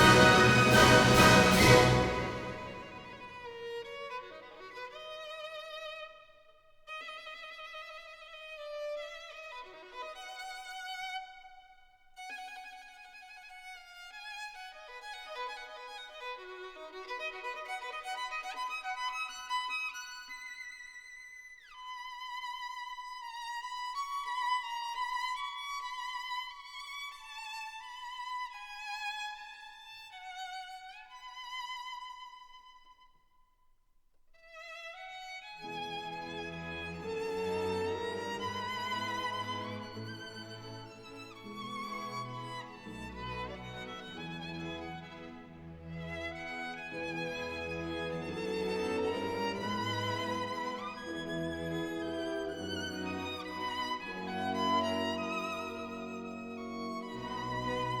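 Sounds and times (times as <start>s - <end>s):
violin playing lively melody: 0.0s - 5.9s, 35.6s - 58.0s.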